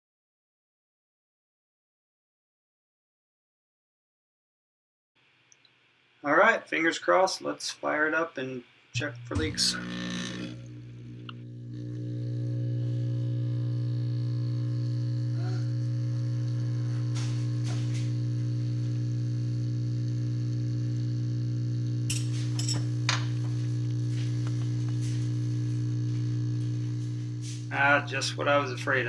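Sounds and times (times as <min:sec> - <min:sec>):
grinder motor humming: 0:09.0 - 0:29.0.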